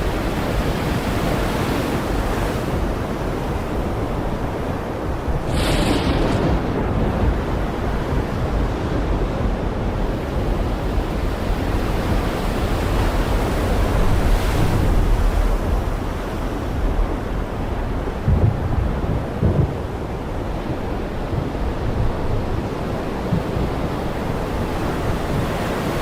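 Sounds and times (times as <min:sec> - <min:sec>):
heavy rain pouring: 0:05.3 - 0:09.5.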